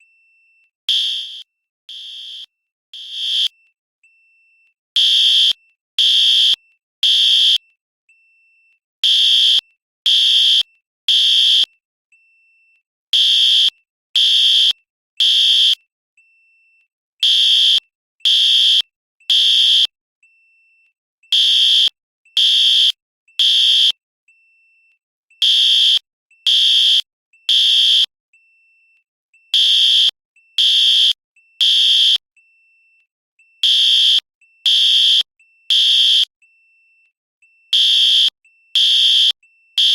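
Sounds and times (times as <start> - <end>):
fire alarm blasts: 0.9 - 3.5, 5.0 - 7.6, 9.0 - 11.7, 13.2 - 15.8, 17.2 - 19.9, 21.3 - 24.0, 25.4 - 28.1, 29.6 - 32.2, 33.6 - 36.3, 37.8 - 39.9.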